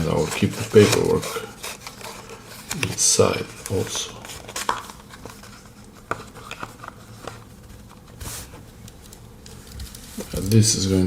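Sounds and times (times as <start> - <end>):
cardboard and paper rustle: 0.0 - 11.0.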